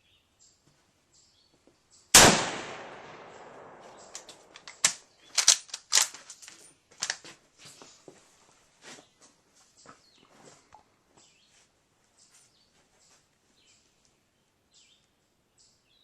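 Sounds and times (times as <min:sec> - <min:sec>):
rifle shot: 0:02.2 - 0:06.1
sharp clicks and knocks: 0:03.9 - 0:07.2.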